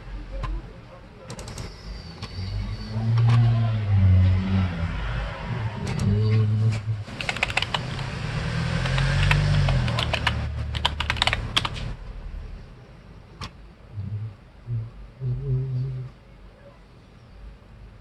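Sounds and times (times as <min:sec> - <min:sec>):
computer keyboard typing: 0:01.3 - 0:02.3, 0:07.1 - 0:08.1, 0:08.7 - 0:11.9.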